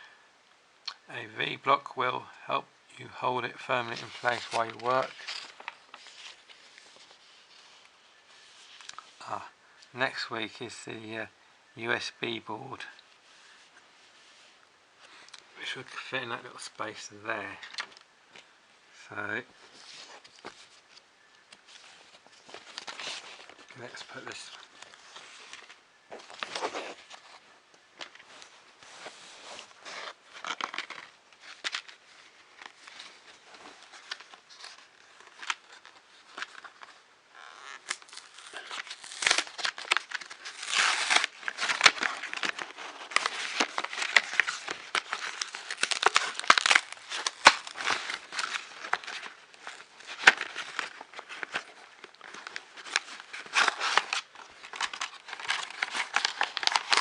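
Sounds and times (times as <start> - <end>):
packaging crinkling: 3.8 - 9.3, 19.6 - 57.0.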